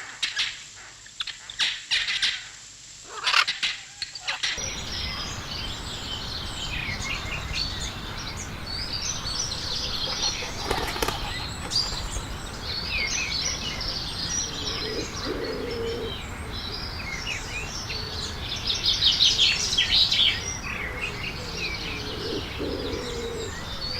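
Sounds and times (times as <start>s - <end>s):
small birds chirping and trilling: 0.0s - 23.9s
low cooing: 13.5s - 16.6s, 20.8s - 23.9s.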